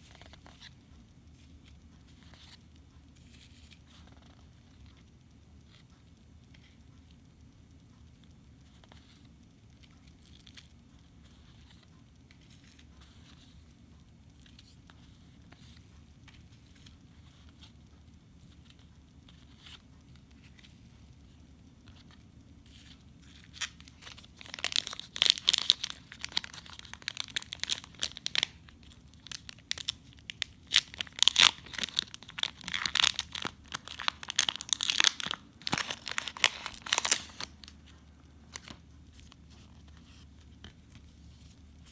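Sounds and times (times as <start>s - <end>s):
plastic wrapping tearing and crinkling: 23.4s - 37.7s.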